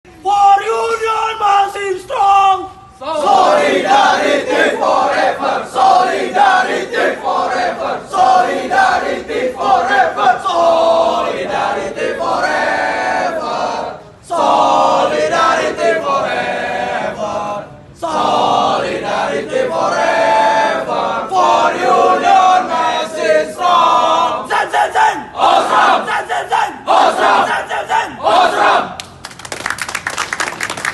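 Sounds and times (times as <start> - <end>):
group chanting in unison: 3.0 - 29.0.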